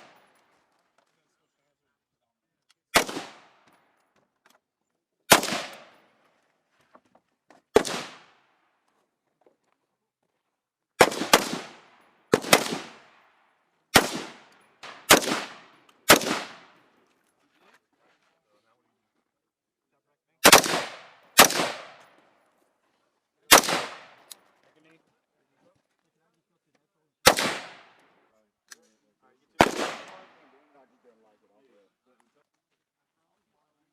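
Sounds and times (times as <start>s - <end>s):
rifle shots echoing: 2.9s - 3.7s, 5.3s - 6.1s, 7.8s - 8.4s, 11.0s - 16.9s, 20.4s - 22.2s, 23.5s - 24.4s, 27.2s - 28.0s, 29.6s - 30.5s.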